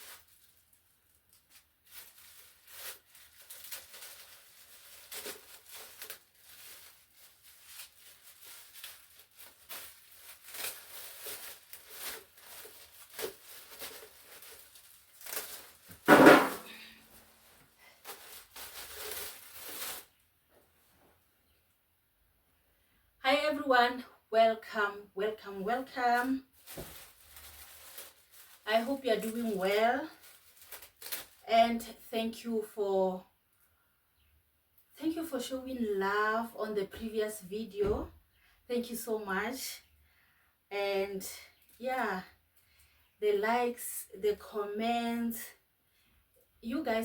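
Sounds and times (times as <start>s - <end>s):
packaging rustling and crinkling: 0.0s - 20.2s, 26.2s - 31.5s
loud knock: 16.1s - 16.6s.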